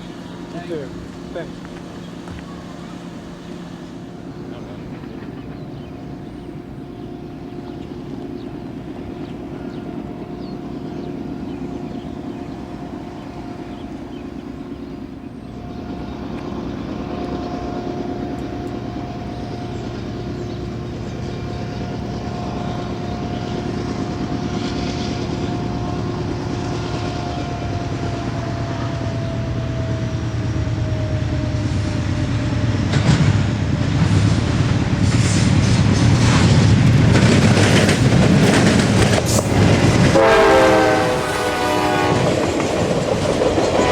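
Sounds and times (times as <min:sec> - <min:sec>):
locomotive engine drone: 0:00.0 - 0:43.9
wheels clattering over rails: 0:32.2 - 0:40.4, 0:42.1 - 0:43.9.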